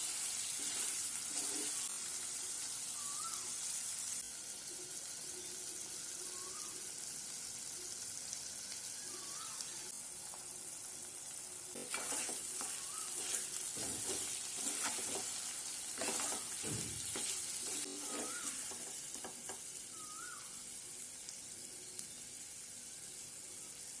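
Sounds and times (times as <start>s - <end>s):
spoon scraping a pan: 0.0s - 2.1s, 11.7s - 19.6s
chicken sizzling in a pan: 0.0s - 24.0s.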